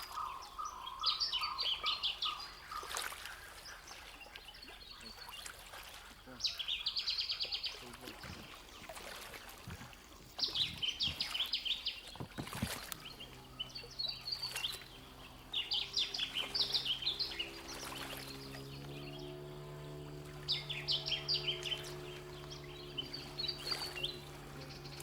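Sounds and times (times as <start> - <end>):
songbird trilling: 0.0 - 9.0, 10.4 - 25.0
low hum: 10.4 - 25.0.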